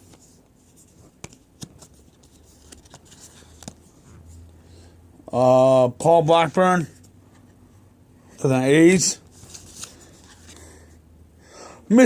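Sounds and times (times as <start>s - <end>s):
cards rustling: 0.0s - 4.1s, 9.3s - 10.7s.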